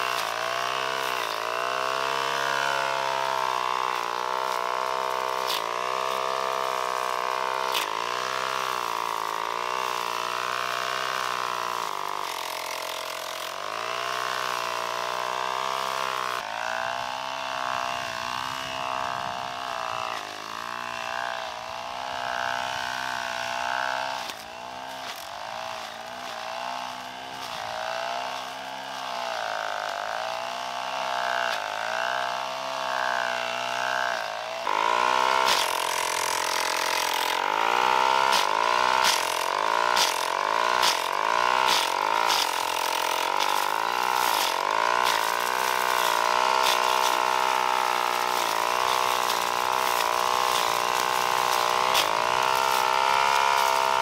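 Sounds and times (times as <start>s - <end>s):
small engine running under load: 0.0s - 54.0s.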